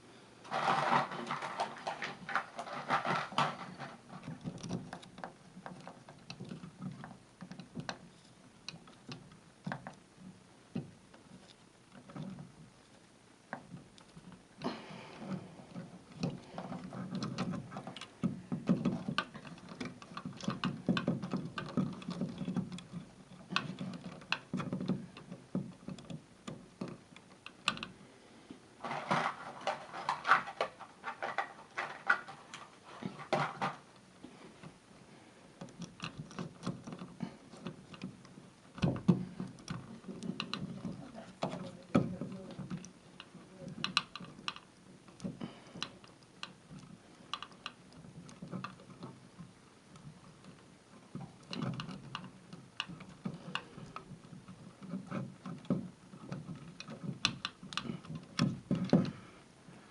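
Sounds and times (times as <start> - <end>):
tools and parts clicking and tapping: 28.8 - 33.8.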